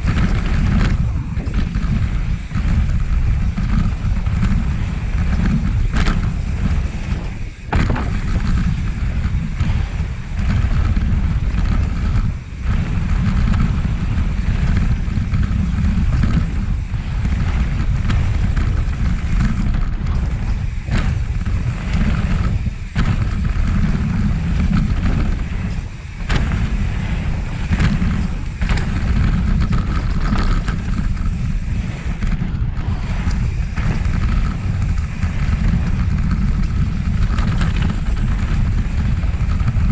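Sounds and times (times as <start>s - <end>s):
bike knocking and rattling: 0.0s - 39.9s
tyre noise: 0.0s - 39.9s
wind buffeting microphone: 0.0s - 39.9s.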